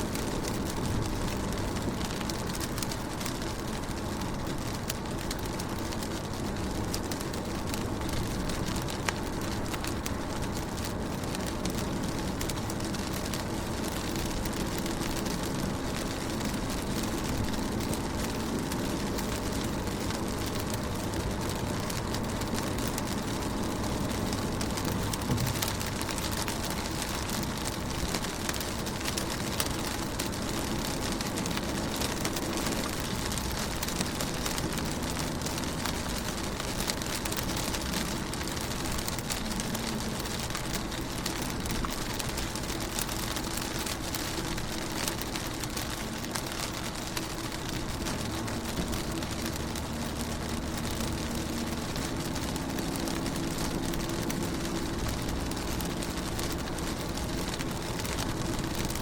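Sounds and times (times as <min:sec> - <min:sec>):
rain pattering on car window: 0:00.0 - 0:59.0
low even rumble: 0:06.2 - 0:29.6.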